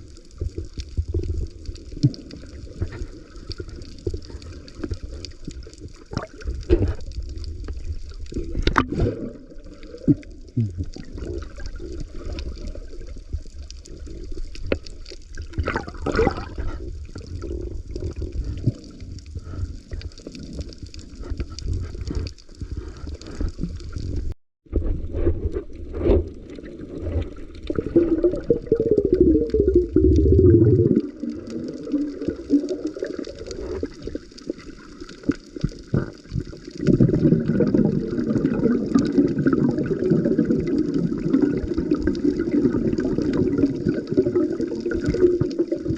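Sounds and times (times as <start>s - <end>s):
muffled underwater water gurgle: 0.0s - 45.9s
sharp clicks underwater: 0.6s - 13.0s, 13.6s - 24.3s.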